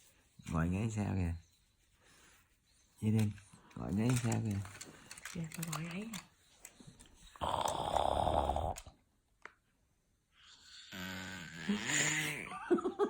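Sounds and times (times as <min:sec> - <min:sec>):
toddler imitating snoring: 0:07.4 - 0:08.9, 0:10.6 - 0:12.5.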